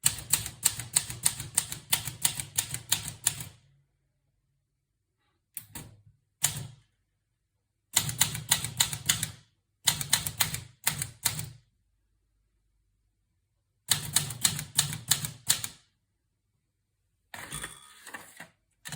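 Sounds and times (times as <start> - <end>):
typewriter keystrokes: 8.0 - 11.6, 13.9 - 15.8.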